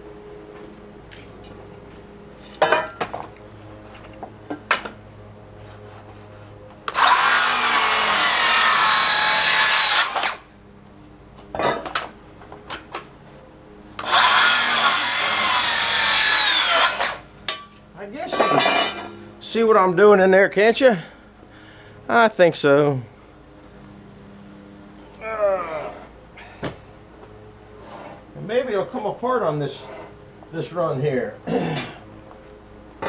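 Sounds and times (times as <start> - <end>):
power saw cutting wood: 6.9 - 10.5, 14.0 - 17.6.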